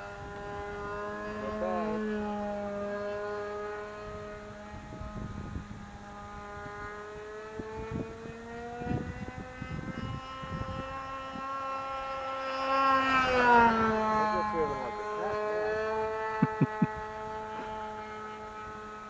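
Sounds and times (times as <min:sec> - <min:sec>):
model plane engine buzzing: 0:00.0 - 0:19.0.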